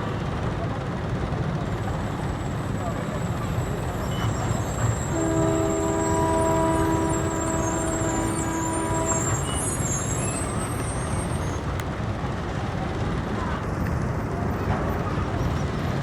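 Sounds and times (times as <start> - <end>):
locomotive air horn blast: 3.7 - 11.6.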